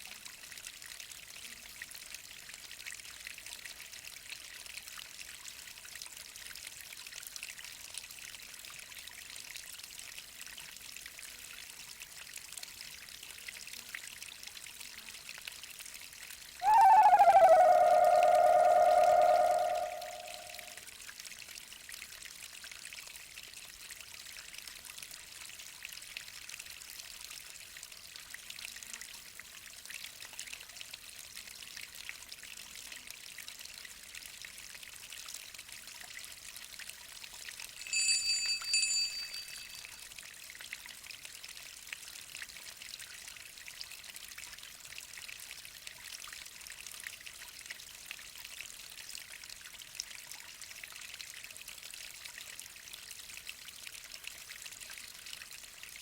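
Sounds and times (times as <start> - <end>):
high-pitched tone: 16.6 - 20.7, 37.8 - 40.0.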